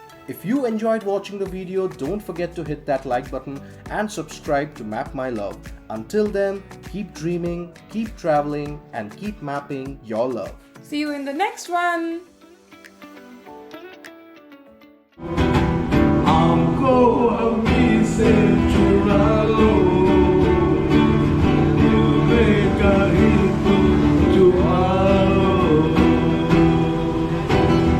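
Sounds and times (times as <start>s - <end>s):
acoustic guitar: 0.0s - 27.9s
person singing: 15.2s - 27.9s.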